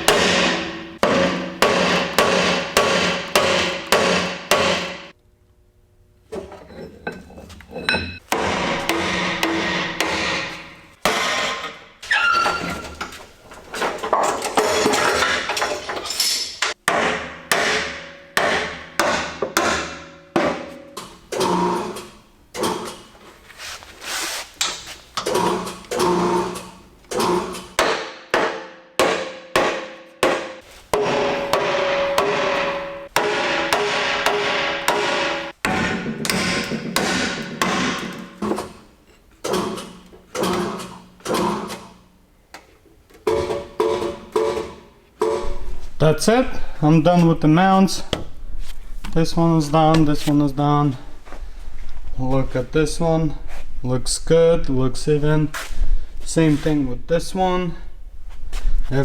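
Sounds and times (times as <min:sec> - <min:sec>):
hammer striking steel: 0:00.0 - 0:05.2, 0:07.9 - 0:11.8, 0:16.6 - 0:22.0, 0:27.2 - 0:38.7.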